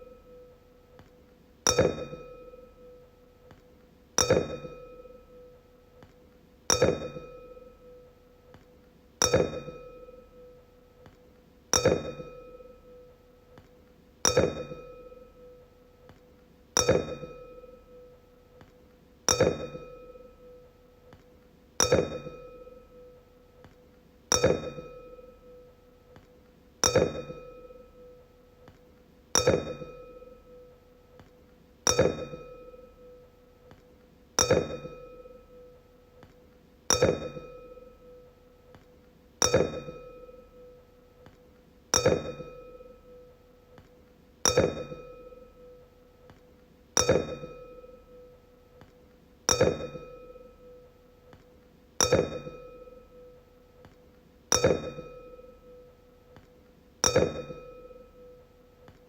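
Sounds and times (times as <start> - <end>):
wine glass ringing when struck: 4.2 - 5.5, 9.2 - 10.5, 11.8 - 13.0, 14.3 - 15.5, 16.8 - 17.8, 19.3 - 20.6, 21.8 - 23.1, 31.9 - 33.2, 36.9 - 38.2, 39.4 - 40.7, 42.0 - 43.3, 44.5 - 45.8, 47.0 - 48.3, 49.5 - 50.8, 52.0 - 53.3, 54.5 - 55.9, 57.0 - 58.4.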